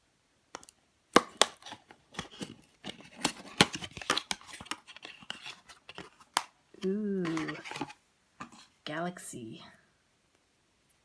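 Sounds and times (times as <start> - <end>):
packaging clicking and crackling: 0.6 - 6.6.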